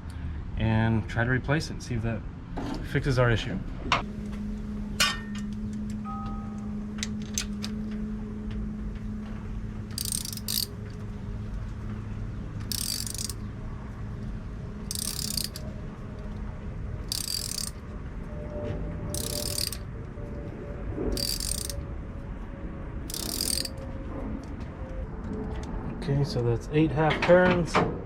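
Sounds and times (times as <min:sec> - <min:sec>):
socket ratchet clicking: 0:09.9 - 0:10.7, 0:12.6 - 0:13.4, 0:14.9 - 0:15.7, 0:17.1 - 0:17.8, 0:19.2 - 0:19.8, 0:21.2 - 0:21.8, 0:23.1 - 0:23.8.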